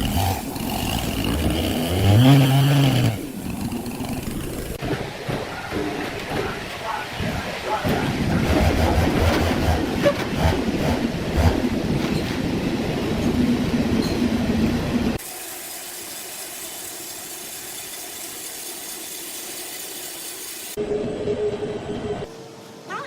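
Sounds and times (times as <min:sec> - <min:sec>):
sawmill machinery clanking: 0:00.0 - 0:12.6, 0:15.2 - 0:20.8.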